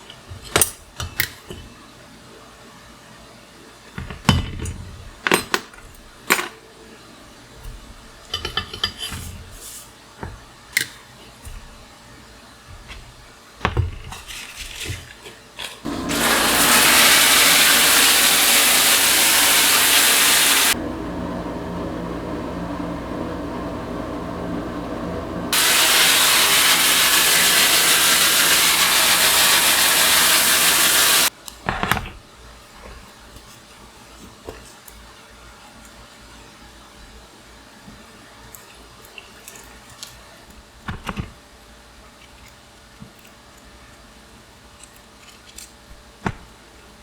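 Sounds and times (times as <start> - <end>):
power tool running: 15.9 - 31.3.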